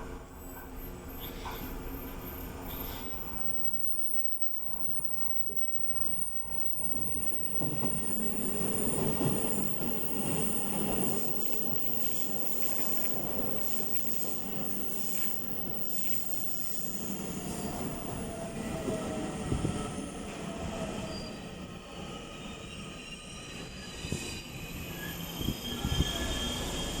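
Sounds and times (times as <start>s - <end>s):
train wheels rumbling on rail: 0.1s - 27.0s
train motor whine: 0.3s - 21.7s
wheel and brake squealing: 0.6s - 21.6s, 22.4s - 27.0s.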